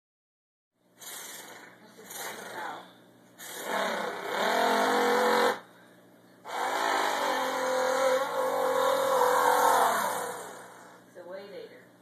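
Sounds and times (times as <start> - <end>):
child imitating engine with mouth: 3.4 - 5.6, 6.5 - 11.0.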